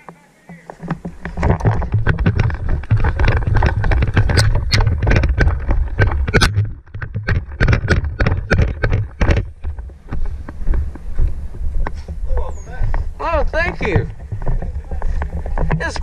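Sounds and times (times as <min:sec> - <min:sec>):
microphone handling noise: 0:00.0 - 0:16.0
rapid footfalls: 0:00.5 - 0:16.0
gear rattling: 0:00.8 - 0:11.0
wind rumble on microphone: 0:00.9 - 0:16.0.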